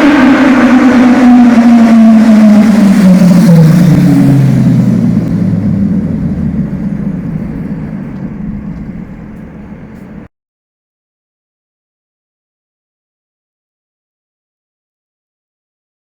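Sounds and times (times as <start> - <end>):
motorcycle engine passing: 0.0 - 10.3.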